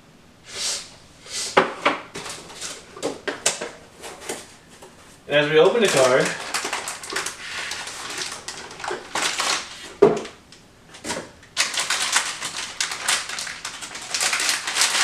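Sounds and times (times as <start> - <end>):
cardboard packaging rustling: 2.1 - 15.0.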